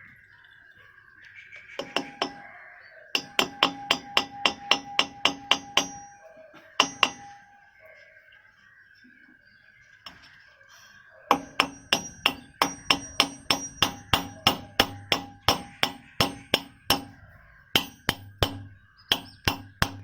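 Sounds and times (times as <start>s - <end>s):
hammer tapping on metal: 1.8s - 2.5s, 3.2s - 7.5s, 11.3s - 20.0s.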